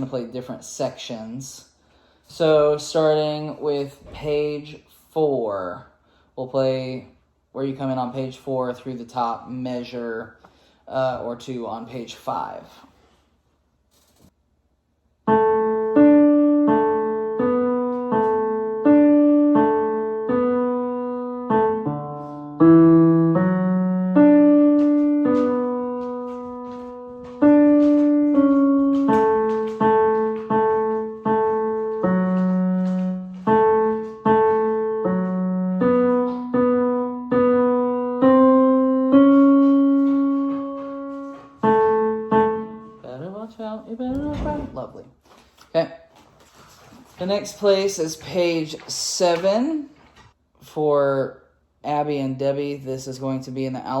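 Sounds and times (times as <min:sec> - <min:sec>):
piano melody: 0:15.3 - 0:44.9.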